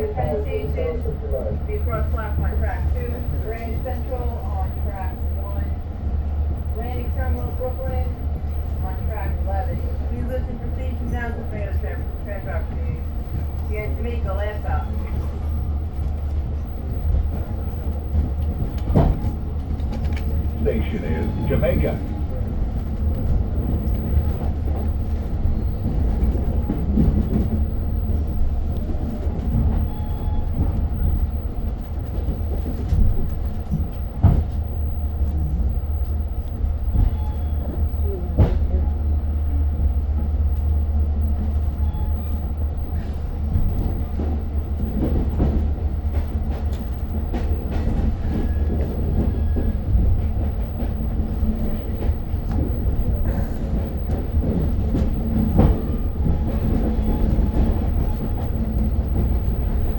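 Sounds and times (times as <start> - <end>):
train low rumble: 0.0 - 59.9
wheels clicking on rails: 41.6 - 59.9.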